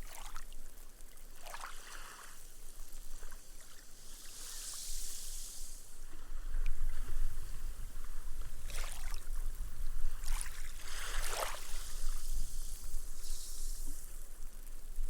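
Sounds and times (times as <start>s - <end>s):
waves washing up a beach: 0.0s - 15.0s
foam fizzing: 1.8s - 6.1s, 10.8s - 14.6s.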